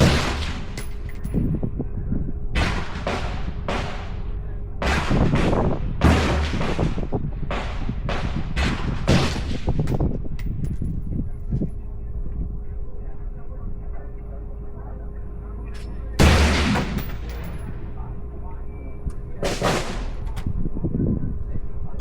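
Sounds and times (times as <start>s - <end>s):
rifle shots echoing: 0.0s - 1.4s, 2.6s - 10.1s, 16.2s - 18.2s, 19.4s - 20.5s.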